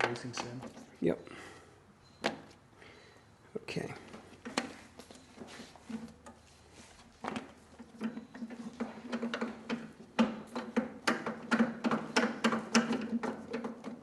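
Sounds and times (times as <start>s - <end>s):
clicks and metallic knocks: 7.3s - 14.0s.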